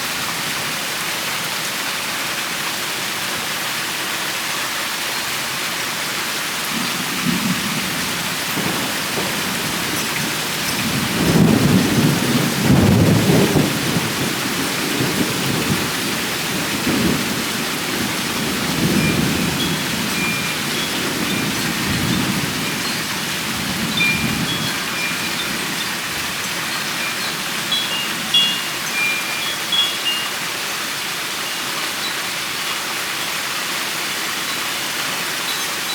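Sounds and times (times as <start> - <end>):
steady rain falling: 0.0 - 35.9
thunder rumbling: 6.8 - 26.9.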